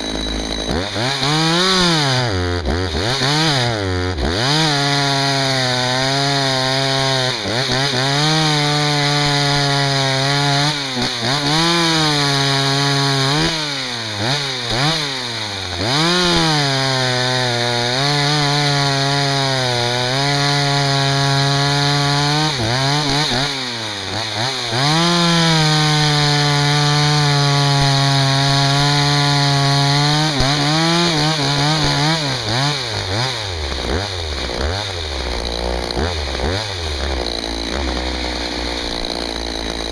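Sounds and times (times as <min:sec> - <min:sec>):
chainsaw cutting firewood: 0:00.0 - 0:39.9.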